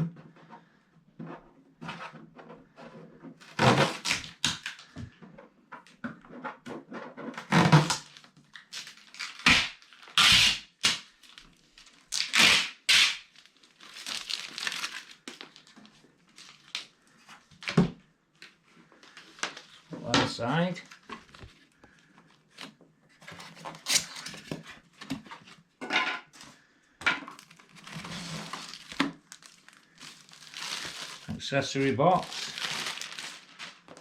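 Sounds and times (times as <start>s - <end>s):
packing material scraping and rustling: 7.3s - 16.9s, 22.6s - 25.5s, 27.3s - 34.0s.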